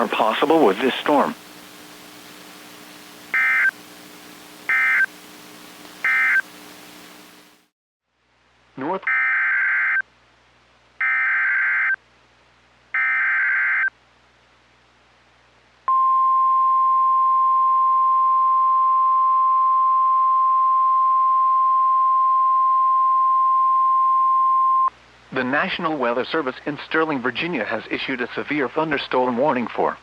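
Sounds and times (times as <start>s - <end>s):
buzzing data bursts: 0.9s - 7.7s
steady warning alarm tone: 3.3s - 3.8s, 4.7s - 5.1s.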